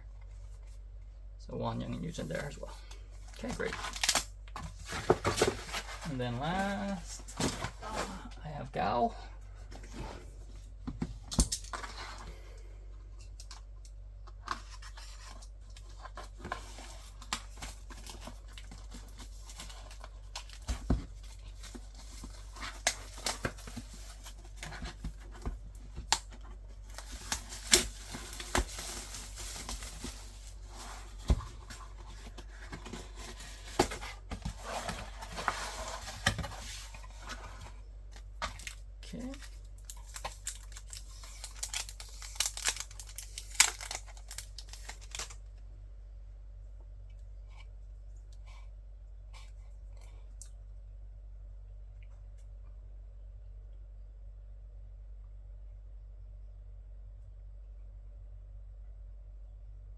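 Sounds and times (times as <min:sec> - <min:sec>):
plastic wrap tearing and crinkling: 0:03.4 - 0:04.3, 0:26.1 - 0:30.7, 0:38.6 - 0:45.4.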